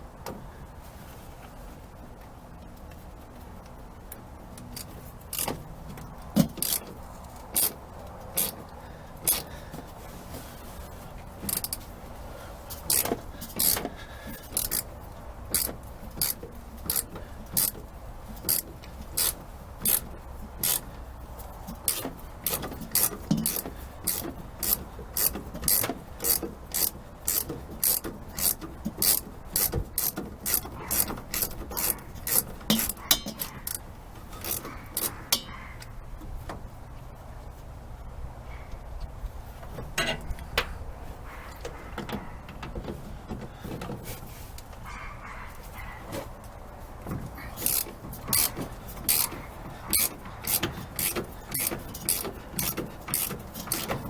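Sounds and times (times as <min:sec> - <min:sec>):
socket ratchet clicking: 0:04.7 - 0:05.6, 0:06.2 - 0:07.8, 0:08.4 - 0:08.6, 0:09.3 - 0:09.5, 0:11.4 - 0:11.8, 0:12.7 - 0:20.9, 0:21.7 - 0:35.5, 0:47.6 - 0:54.0.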